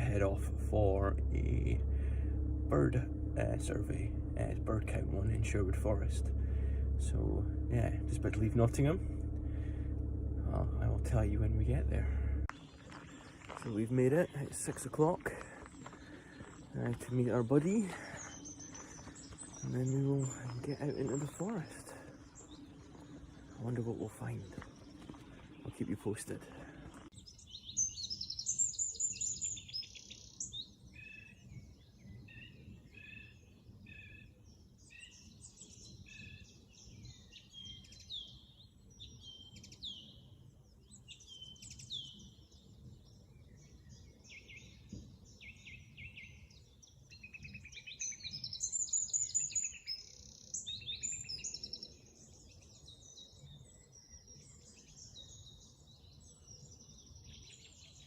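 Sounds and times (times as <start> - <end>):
faint low rumble: 0.0 - 27.1
songbirds singing: 0.0 - 58.0.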